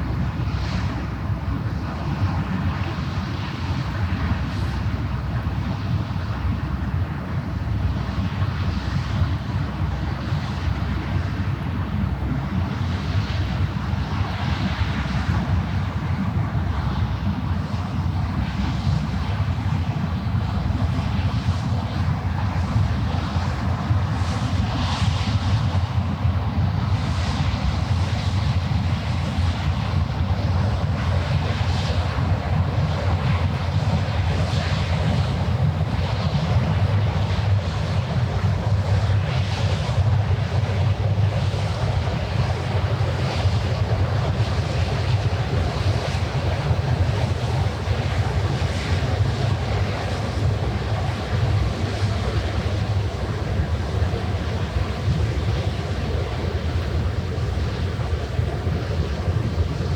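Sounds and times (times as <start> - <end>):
wind buffeting microphone: 0.0 - 59.9
ship engine drone: 40.9 - 59.9
waves washing: 47.4 - 59.9.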